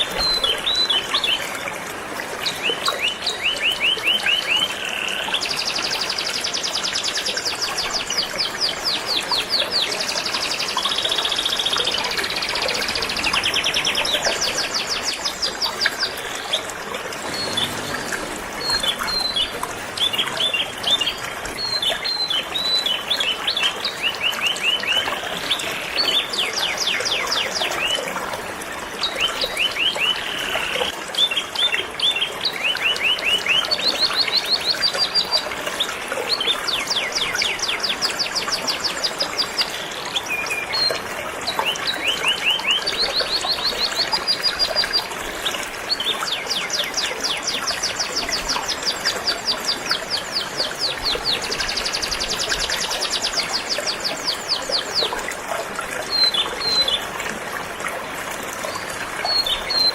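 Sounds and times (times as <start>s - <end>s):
flowing river water: 0.0s - 59.9s
canaries singing: 2.7s - 25.0s.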